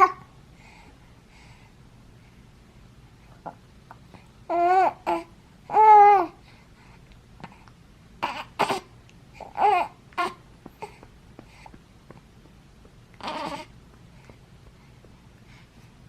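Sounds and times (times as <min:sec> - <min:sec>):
baby cooing: 0:00.0 - 0:00.2, 0:04.5 - 0:06.4, 0:08.2 - 0:11.1, 0:13.2 - 0:13.7.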